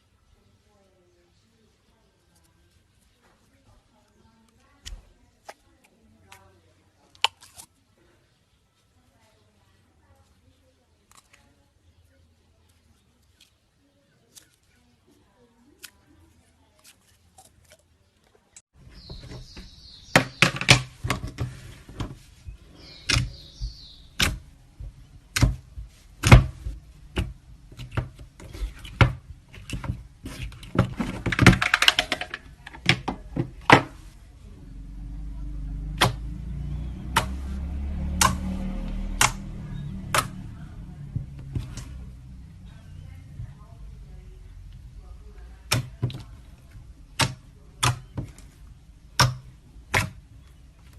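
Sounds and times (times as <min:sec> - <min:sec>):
low steady hum: 0:18.8 - 0:50.9.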